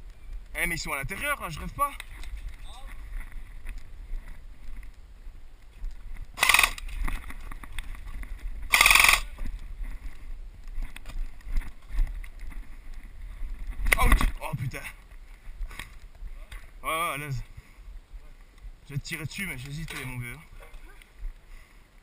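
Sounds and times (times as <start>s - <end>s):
airsoft gunfire bursts: 6.4s - 6.8s, 8.7s - 9.3s.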